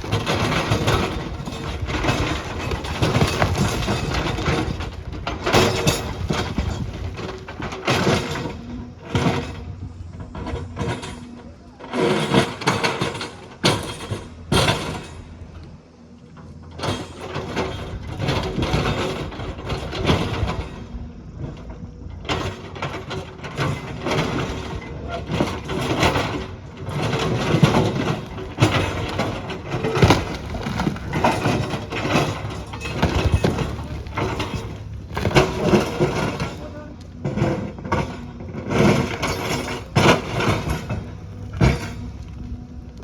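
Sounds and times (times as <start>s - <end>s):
clanks knocks and cracking: 0.0s - 9.6s, 22.3s - 42.7s
heavy machine engine running: 0.0s - 43.0s.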